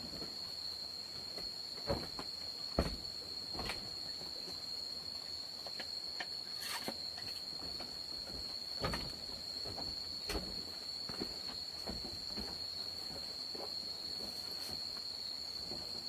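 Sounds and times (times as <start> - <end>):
high-pitched insect drone: 3.5 - 13.8.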